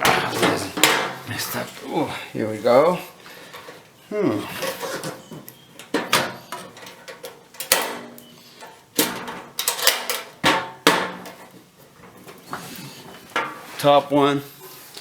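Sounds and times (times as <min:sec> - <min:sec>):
metal tool box drawers clanking: 0:00.0 - 0:01.8.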